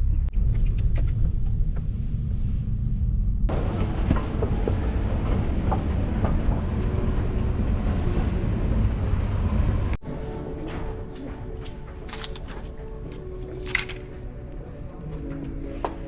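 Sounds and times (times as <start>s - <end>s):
vehicle rumble from inside: 0.0s - 10.0s
quiet music with held tones: 10.0s - 16.0s
clicks and rattles: 12.0s - 15.3s.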